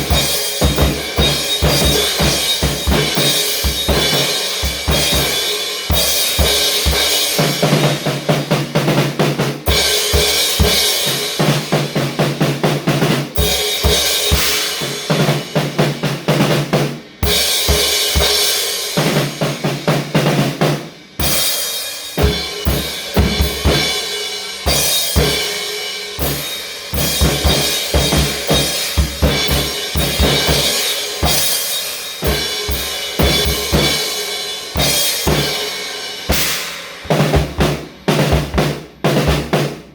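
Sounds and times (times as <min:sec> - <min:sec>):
drum kit playing busy beat: 0:00.0 - 0:39.9
music: 0:00.0 - 0:39.9.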